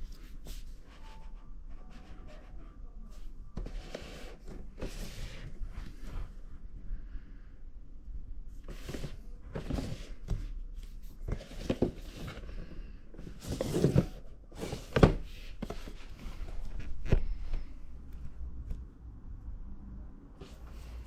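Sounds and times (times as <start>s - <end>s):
packaging rustling and scraping: 13.2s - 17.4s.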